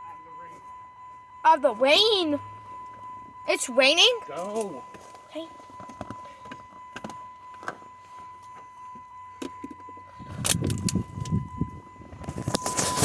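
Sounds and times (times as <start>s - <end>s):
faint steady high tone: 0.0s - 13.0s.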